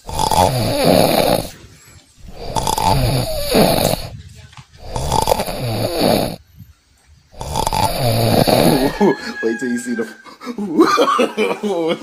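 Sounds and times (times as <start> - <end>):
man snoring loudly: 0.0 - 1.6, 2.2 - 4.1, 4.8 - 6.4, 7.4 - 9.0.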